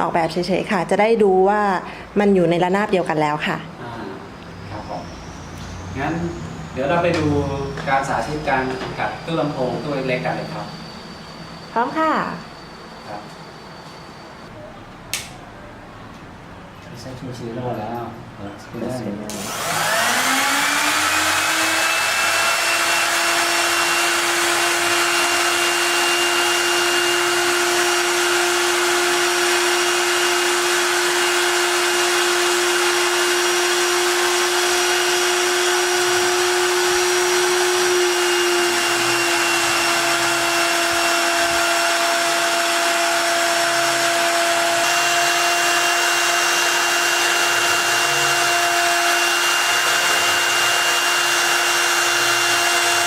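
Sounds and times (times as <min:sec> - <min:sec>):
router spindle humming: 0:19.3 - 0:53.0.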